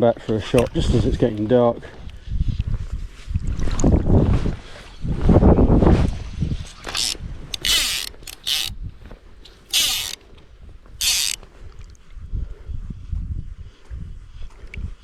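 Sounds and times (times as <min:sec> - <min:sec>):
fly line zipping off reel: 0:06.9 - 0:08.7, 0:09.7 - 0:10.2, 0:11.0 - 0:11.4.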